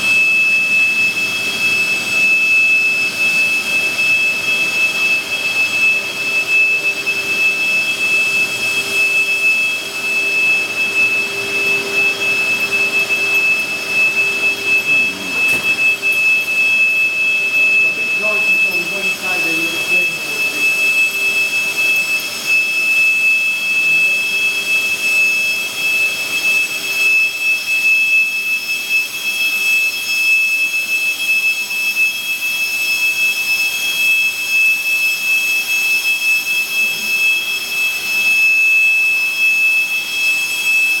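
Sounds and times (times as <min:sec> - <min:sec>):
elevator mechanical whine: 0:00.0 - 0:27.8.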